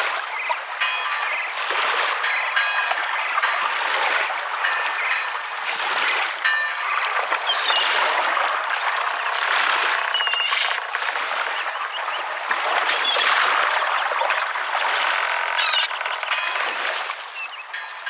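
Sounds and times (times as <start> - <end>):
water-like hiss ringtone: 0.3 - 10.9, 14.8 - 18.0.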